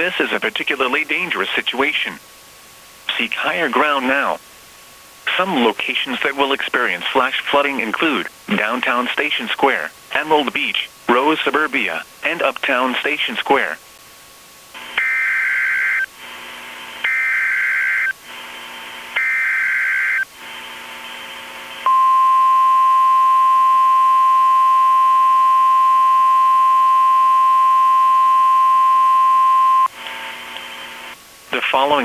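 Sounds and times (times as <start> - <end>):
steady attention tone: 21.8 - 29.9.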